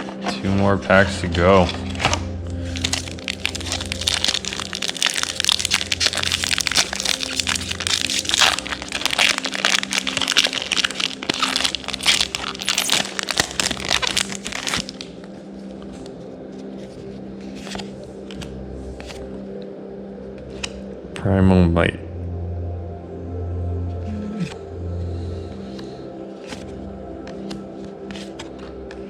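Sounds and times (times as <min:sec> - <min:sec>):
foil wrapper crinkling: 0:01.7 - 0:15.3.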